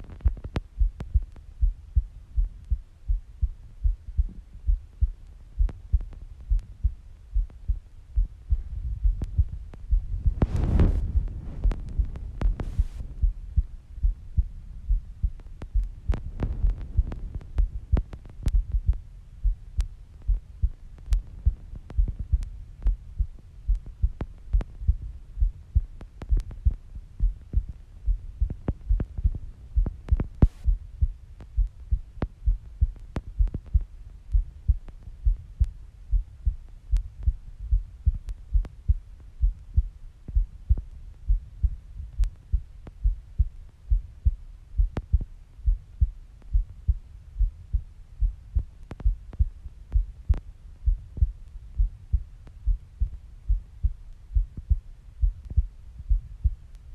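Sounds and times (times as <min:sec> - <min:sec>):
constant low rumble: 0:00.0 - 0:56.9
heartbeat thumps: 0:00.0 - 0:56.9.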